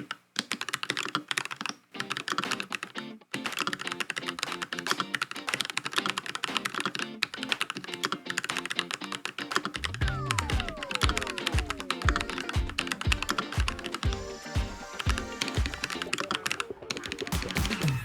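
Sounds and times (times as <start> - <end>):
mechanical keyboard typing: 0.0 - 14.1.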